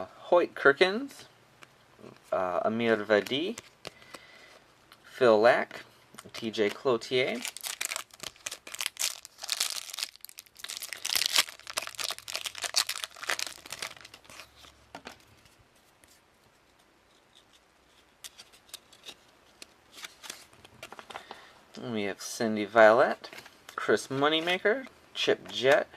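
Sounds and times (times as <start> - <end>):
card pack wrapper tearing: 6.2 - 14.8.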